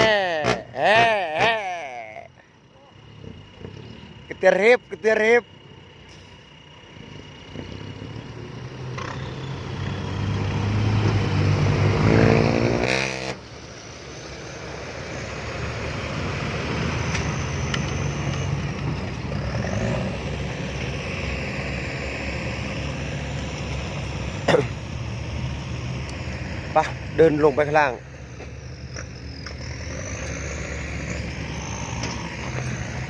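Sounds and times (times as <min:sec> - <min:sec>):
diesel truck engine revving: 0:00.0 - 0:33.0.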